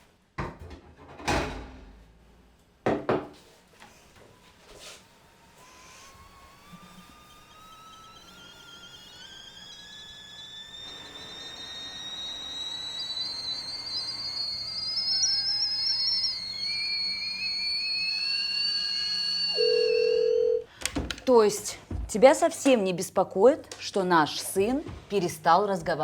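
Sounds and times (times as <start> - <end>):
whistling kettle: 4.4 - 20.4.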